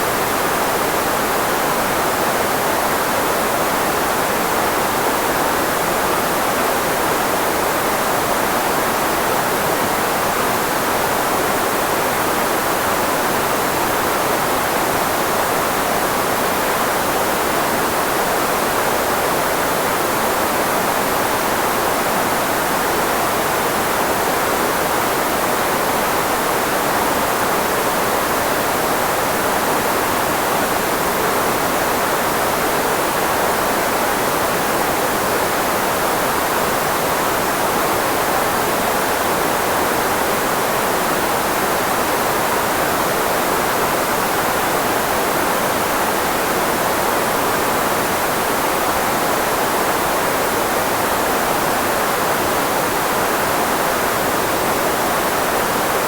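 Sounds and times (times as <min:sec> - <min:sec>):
filtered white noise: 0:00.0 - 0:56.0.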